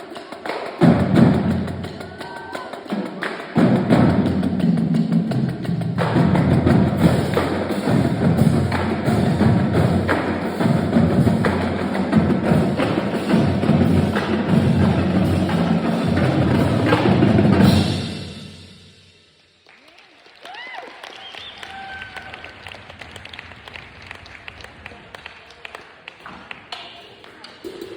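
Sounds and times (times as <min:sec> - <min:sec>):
marching drumline playing: 0:00.0 - 0:19.2.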